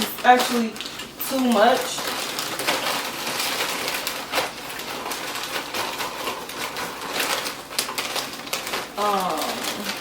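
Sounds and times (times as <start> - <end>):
chips rattling: 0.0 - 10.0
plastic chip bag crinkling: 0.0 - 10.0.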